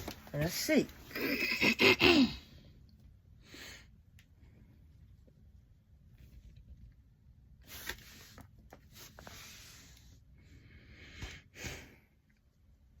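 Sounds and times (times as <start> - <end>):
rustling and scraping of objects: 0.0 - 1.1, 7.6 - 10.2.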